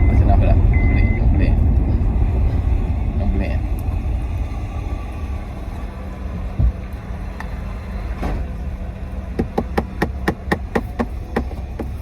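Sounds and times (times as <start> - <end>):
car cabin rumble: 0.0 - 12.0
thump: 8.2 - 8.5
sharp taps: 9.4 - 12.0.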